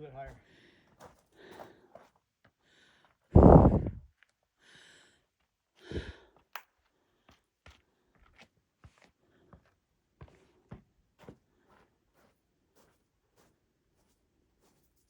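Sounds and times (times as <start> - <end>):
heavy exhaled breath: 3.3 - 4.1, 5.8 - 6.3.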